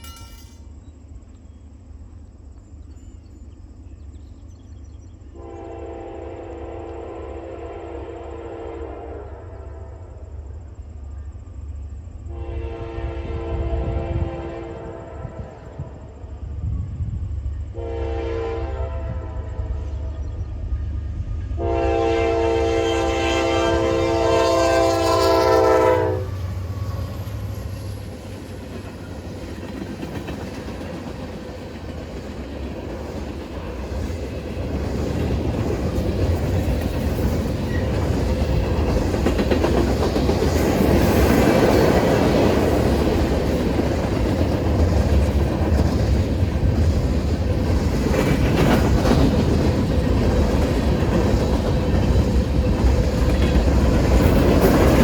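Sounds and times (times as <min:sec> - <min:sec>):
diesel locomotive rumble: 0:00.0 - 0:55.0
locomotive chime horn blast: 0:17.8 - 0:19.4, 0:21.6 - 0:27.0
train wheels clacking over rails: 0:24.0 - 0:55.0.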